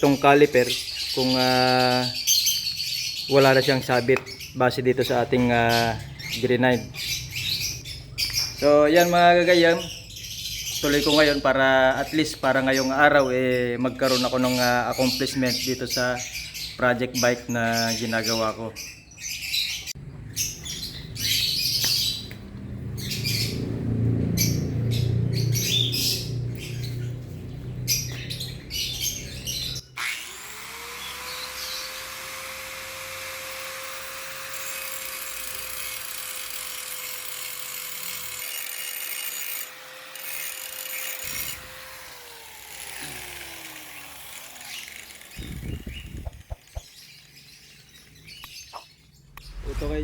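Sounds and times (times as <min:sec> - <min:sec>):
electric grinder grinding metal: 0:29.9 - 0:48.4.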